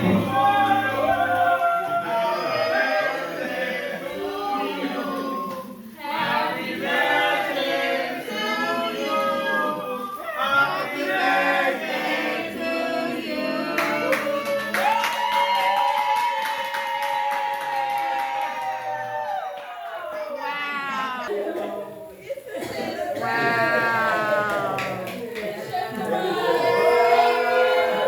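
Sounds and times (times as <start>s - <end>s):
group singing in chorus: 0.0s - 15.3s, 22.6s - 28.0s.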